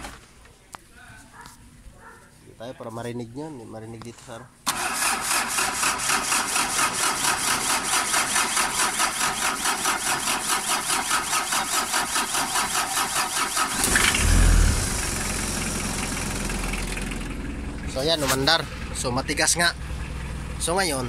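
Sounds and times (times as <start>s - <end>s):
diesel engine cranking: 4.6s - 21.0s
diesel engine idling: 4.7s - 21.0s.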